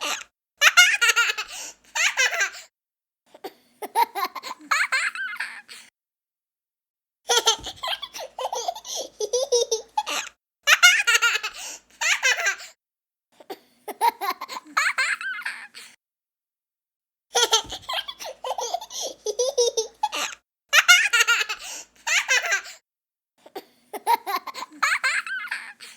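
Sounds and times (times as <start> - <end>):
young child laughing: 0.0 - 2.6, 7.3 - 12.7, 17.4 - 22.8, 24.0 - 25.9.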